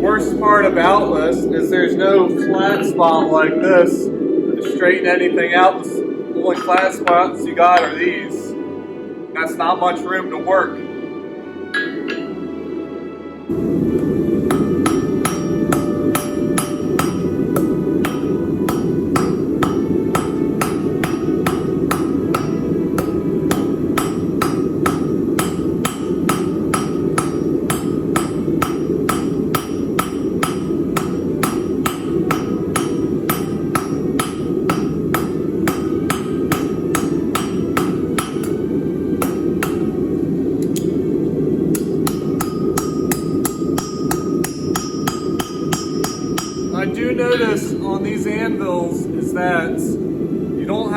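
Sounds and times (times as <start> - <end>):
low rushing noise: 0.0 - 50.9
hammer striking anvil: 7.8 - 8.0, 14.4 - 38.6, 39.2 - 39.9, 41.7 - 47.8.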